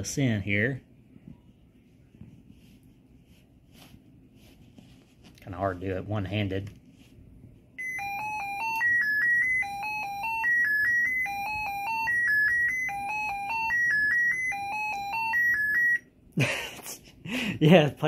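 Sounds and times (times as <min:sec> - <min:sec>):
laptop electronic beep tune: 0:07.8 - 0:16.0.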